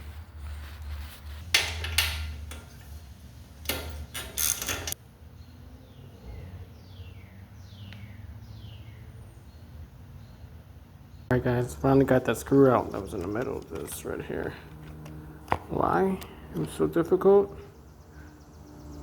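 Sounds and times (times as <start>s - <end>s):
hand tool clicks and scrapes: 1.2s - 3.0s
screw squeaking: 3.7s - 5.0s.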